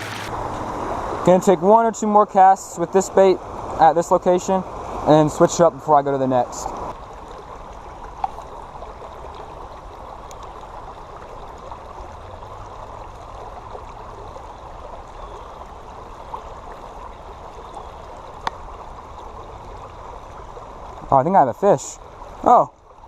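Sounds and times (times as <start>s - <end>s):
creek water flowing: 0.0s - 23.0s
faint ticks: 18.4s - 18.6s.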